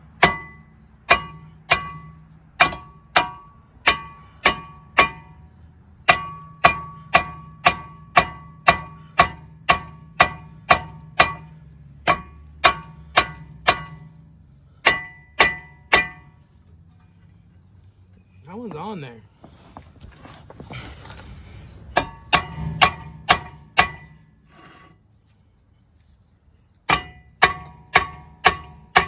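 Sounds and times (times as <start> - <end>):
hammer striking brake rotor: 0.0 - 16.6, 21.9 - 24.9, 26.8 - 29.0.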